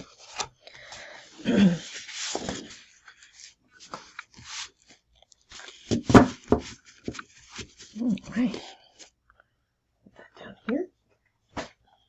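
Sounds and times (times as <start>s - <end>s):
paper sheets rustling and scraping: 1.6s - 4.9s, 5.5s - 8.0s.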